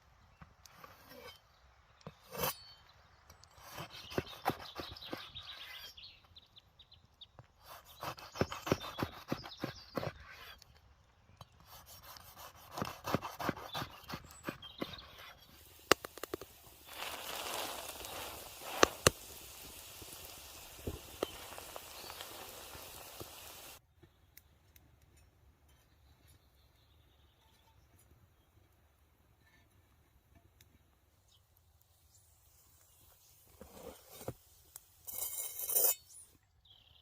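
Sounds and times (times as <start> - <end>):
rustling and scraping: 12.4 - 23.8, 33.1 - 36.0
steady hiss: 15.5 - 23.8
crackling clicks: 15.8 - 23.8.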